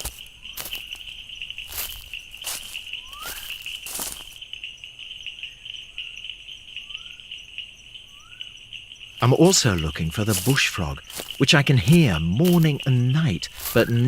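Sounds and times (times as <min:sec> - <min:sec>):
rustling crunches in leaves: 0:00.0 - 0:04.4, 0:09.2 - 0:14.0
upward-sliding insect chirps: 0:00.0 - 0:04.4
crickets trilling: 0:00.0 - 0:14.0.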